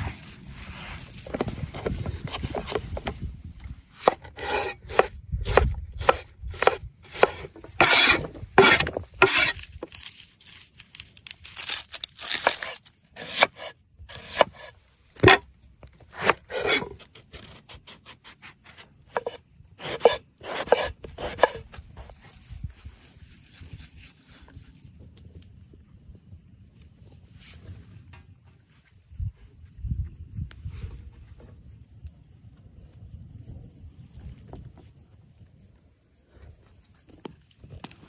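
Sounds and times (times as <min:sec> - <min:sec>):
knife scraping board: 0:01.2 - 0:03.1, 0:04.0 - 0:09.7, 0:12.4 - 0:15.4, 0:16.1 - 0:18.0, 0:18.6 - 0:22.2
knife chopping on board: 0:04.0 - 0:09.5.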